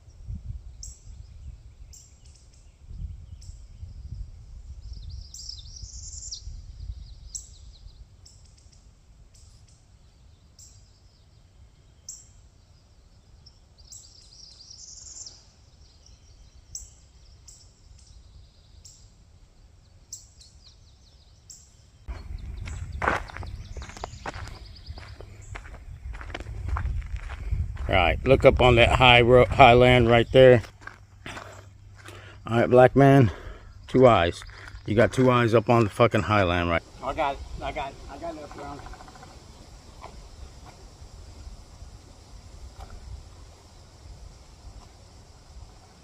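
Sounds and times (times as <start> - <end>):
birds chirping: 0.0 - 46.0
warbling birdsong: 0.0 - 46.0
footsteps: 22.1 - 29.8, 30.6 - 32.3.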